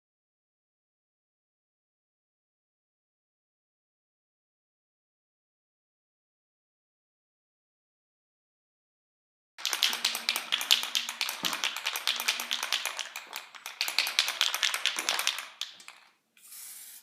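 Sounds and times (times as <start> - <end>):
rapid irregular clicking: 9.6 - 16.2.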